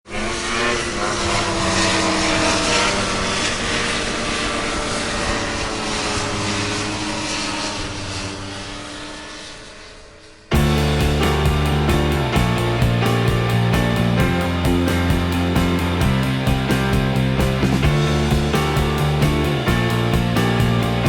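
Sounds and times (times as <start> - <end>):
snowmobile engine racing by: 0.1 - 21.0
music: 10.5 - 21.0.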